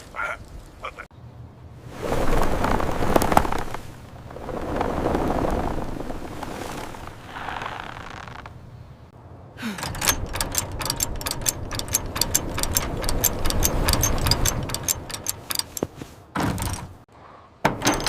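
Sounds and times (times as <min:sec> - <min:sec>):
frame knocking and rattling: 0:09.6 - 0:18.0.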